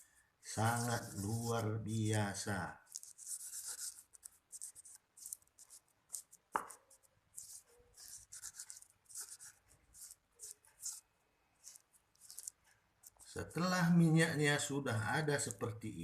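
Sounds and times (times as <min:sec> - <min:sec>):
nut scraping against a spoon: 0:11.6 - 0:13.4.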